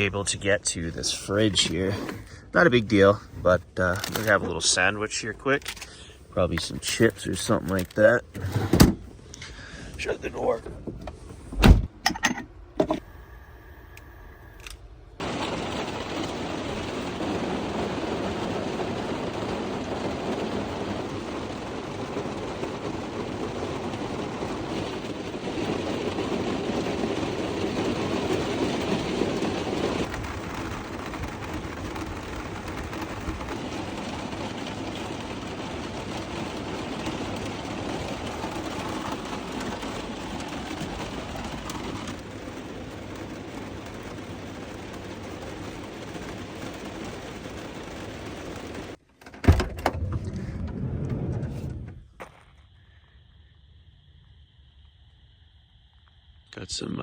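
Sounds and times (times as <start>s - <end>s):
steady rain falling: 14.6s - 49.0s.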